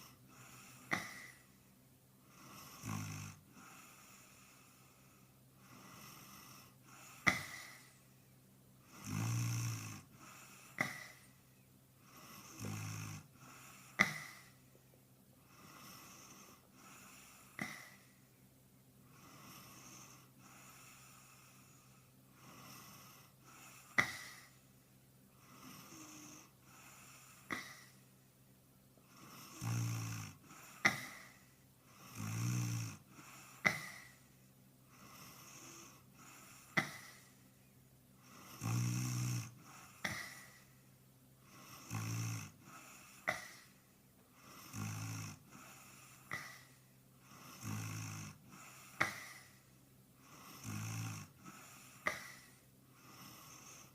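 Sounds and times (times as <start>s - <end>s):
pitched-up snoring: 2.4s - 5.0s, 5.7s - 8.0s, 8.9s - 11.3s, 12.1s - 14.6s, 15.6s - 18.1s, 25.4s - 27.9s, 29.1s - 34.2s, 38.3s - 40.6s, 41.5s - 43.7s, 44.4s - 49.6s, 50.2s - 53.9s.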